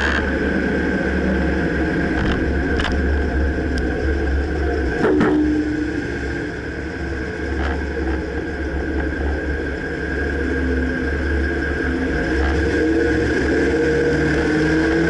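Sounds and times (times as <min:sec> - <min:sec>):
pickup truck engine rumbling: 0:00.0 - 0:15.0.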